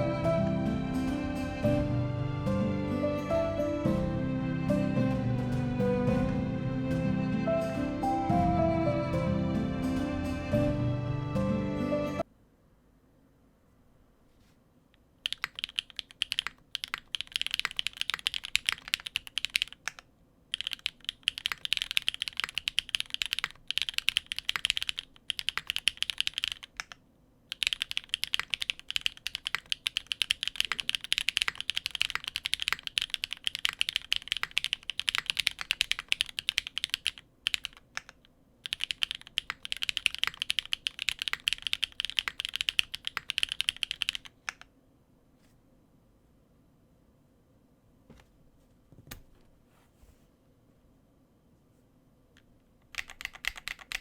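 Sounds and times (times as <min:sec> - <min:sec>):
fast typing on mechanical keyboard: 0:15.2 - 0:44.7, 0:52.9 - 0:54.0.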